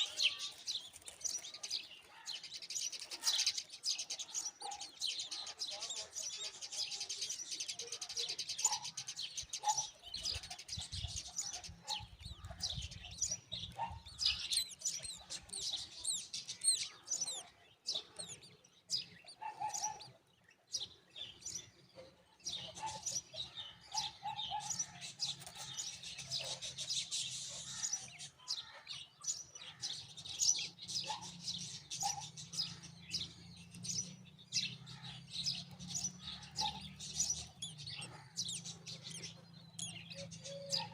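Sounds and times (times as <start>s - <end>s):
baby birds chirping: 0.0s - 21.7s, 22.5s - 40.9s.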